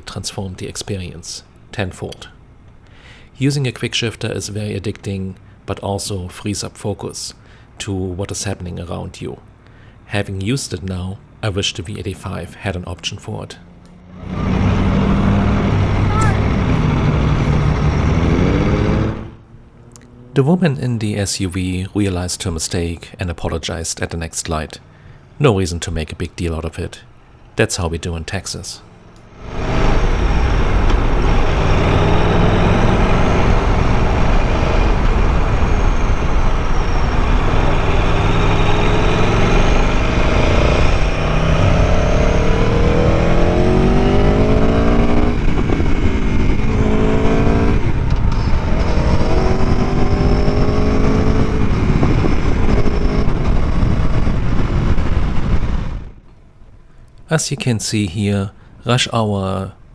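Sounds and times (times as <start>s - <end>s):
motorcycle engine accelerating: 13.5s - 20.4s, 28.9s - 56.2s
wind rumble on microphone: 39.3s - 56.2s.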